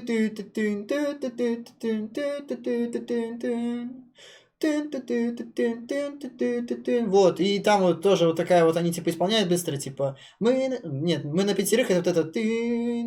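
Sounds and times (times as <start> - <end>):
person singing a melody: 0.0 - 8.2, 11.9 - 13.0.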